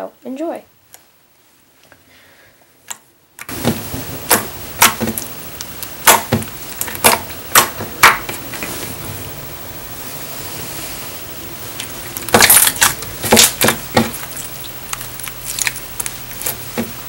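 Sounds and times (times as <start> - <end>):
steady hiss: 3.4 - 17.0.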